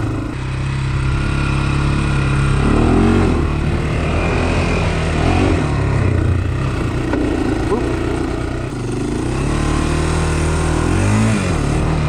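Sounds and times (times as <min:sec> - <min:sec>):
quad bike engine revving: 0:00.0 - 0:12.0.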